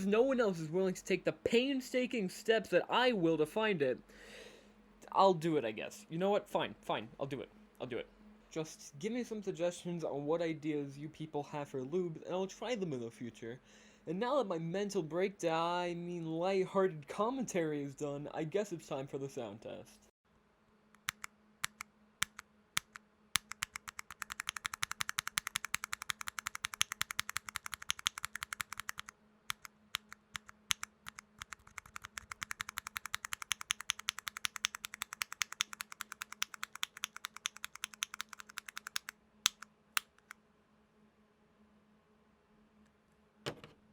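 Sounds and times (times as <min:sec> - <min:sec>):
mechanical keyboard typing: 0:21.0 - 0:39.6.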